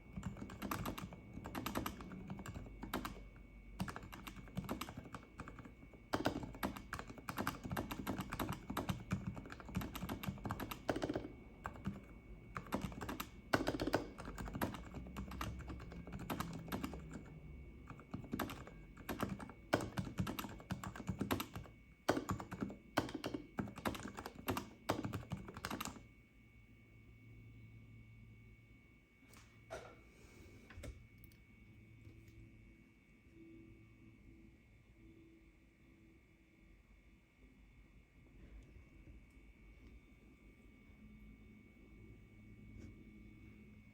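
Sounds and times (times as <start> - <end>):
soft keyboard typing: 0.1 - 26.1.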